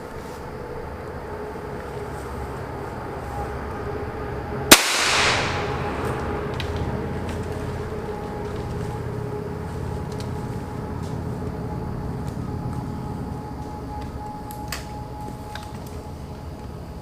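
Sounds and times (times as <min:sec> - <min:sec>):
steady background hum: 0:00.0 - 0:17.0
gunshot with echo: 0:04.7 - 0:06.4.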